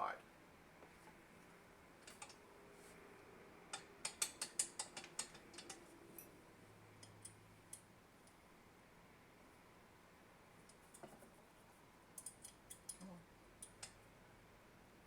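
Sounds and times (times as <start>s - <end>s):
light clicks of metal parts: 2.0s - 2.4s, 3.7s - 6.4s, 7.0s - 8.4s, 12.1s - 14.0s.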